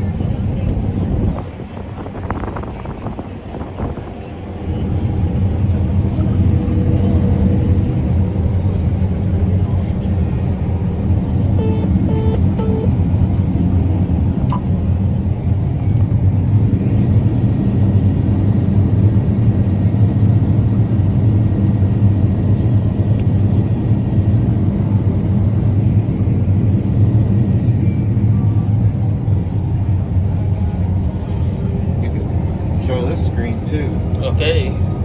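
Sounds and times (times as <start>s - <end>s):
combine harvester droning: 3.9s - 35.0s.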